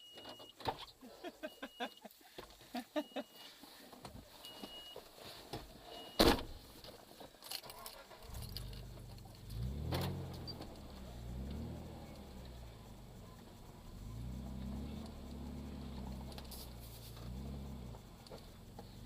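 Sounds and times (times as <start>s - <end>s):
engine revving: 8.3s - 19.0s.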